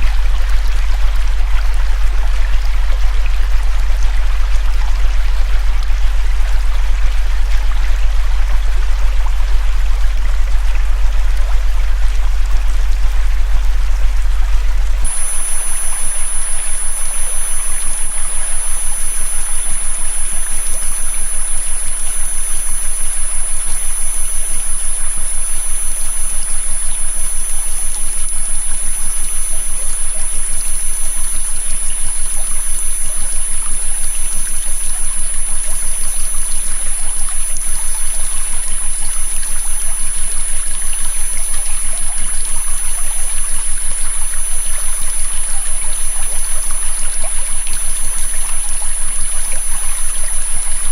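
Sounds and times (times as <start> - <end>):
river water flowing: 0.0 - 50.9
high-pitched tone: 15.0 - 38.1.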